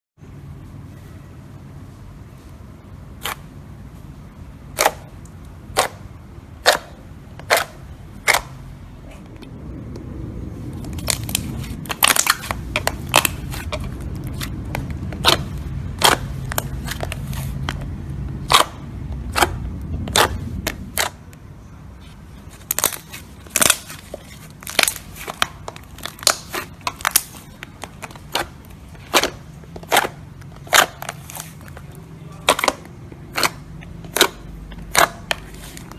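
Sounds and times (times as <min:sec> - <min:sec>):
low steady rumble: 0:00.2 - 0:35.9
slime popping: 0:32.4 - 0:35.9.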